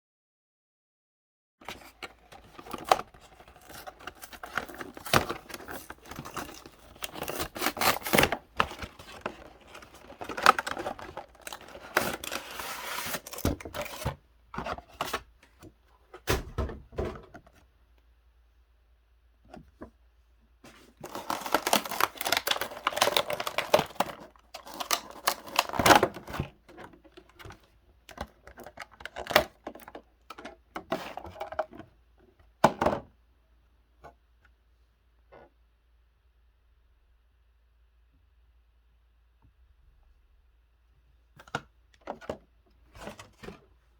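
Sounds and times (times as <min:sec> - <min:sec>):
cardboard and wrapping crinkling tearing: 0:01.7 - 0:14.1, 0:21.0 - 0:26.4.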